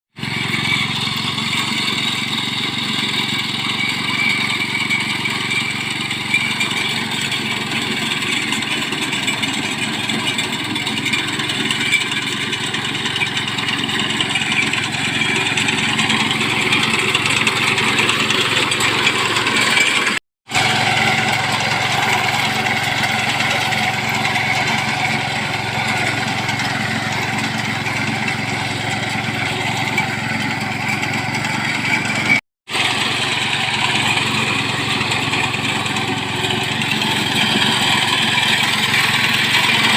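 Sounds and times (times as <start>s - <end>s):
petrol engine running: 0.2s - 39.9s.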